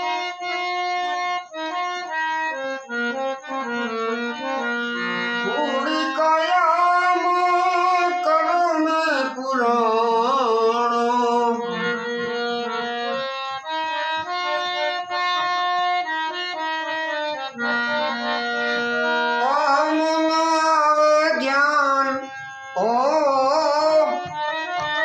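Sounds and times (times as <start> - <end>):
harmonium playing held notes: 0.0 - 25.0
person singing ornamented line: 5.4 - 12.3, 19.4 - 24.4.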